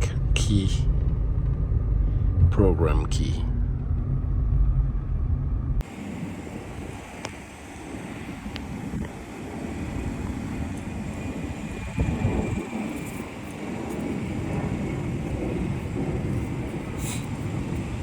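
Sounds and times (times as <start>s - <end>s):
vehicle engine rumble: 0.0s - 18.0s
wind noise on microphone: 3.5s - 18.0s.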